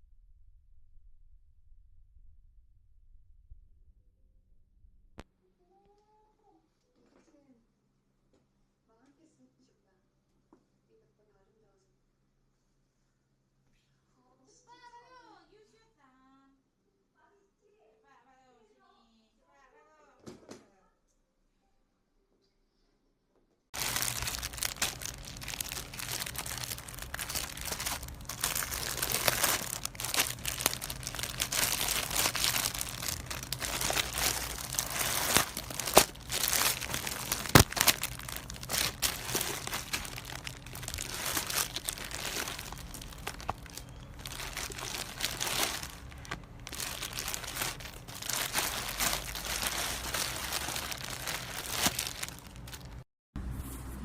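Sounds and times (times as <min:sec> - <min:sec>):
packaging crinkling and tearing: 0:23.8 - 0:53.0.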